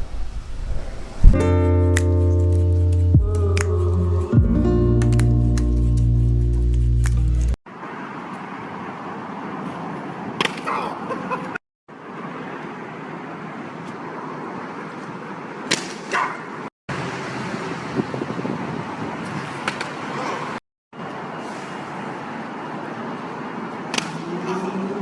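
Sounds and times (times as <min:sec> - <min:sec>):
road traffic noise: 0:05.1 - 0:25.0.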